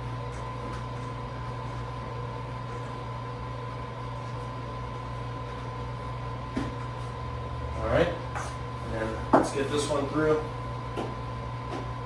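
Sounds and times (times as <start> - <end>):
electrical hum and hiss: 0.0 - 12.0.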